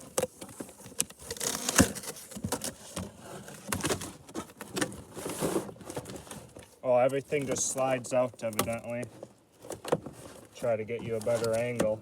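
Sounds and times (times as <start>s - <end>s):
cardboard box being opened: 0.0s - 8.0s.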